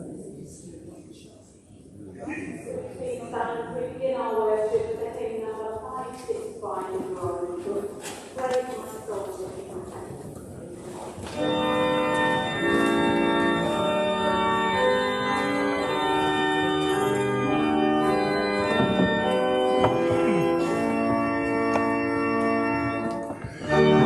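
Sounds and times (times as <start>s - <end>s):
church organ playing hymn: 11.2s - 24.0s.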